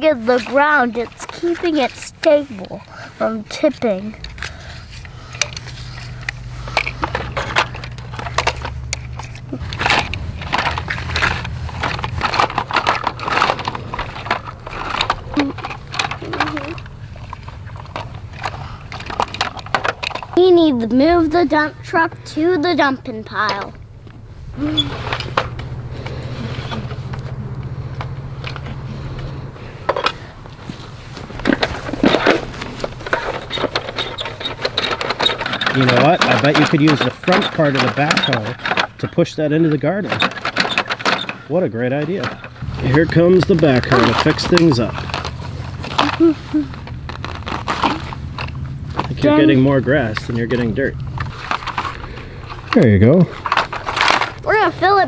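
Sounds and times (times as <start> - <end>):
toy digger bucket crunching dirt: 0.0 - 23.8, 24.4 - 55.0
steady low buzz: 3.7 - 36.3, 42.2 - 55.0.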